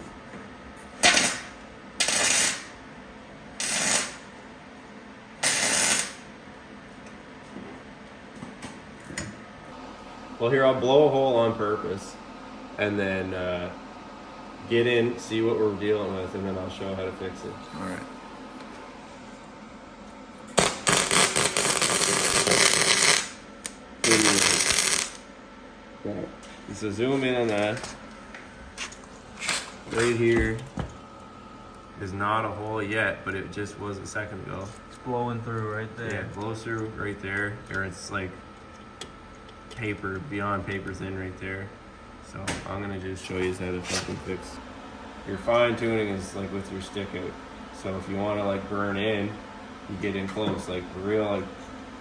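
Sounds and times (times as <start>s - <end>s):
welder crackling bursts: 1.0s - 2.7s, 3.6s - 4.3s, 5.4s - 6.2s, 20.6s - 25.3s.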